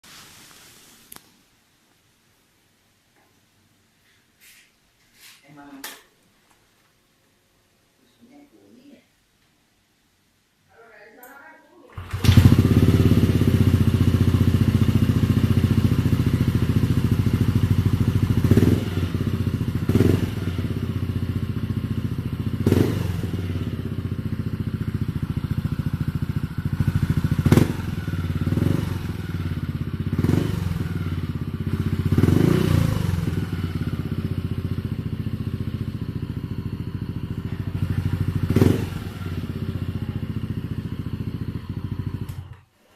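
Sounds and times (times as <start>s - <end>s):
scooter engine idling and revving: 11.9s - 42.6s.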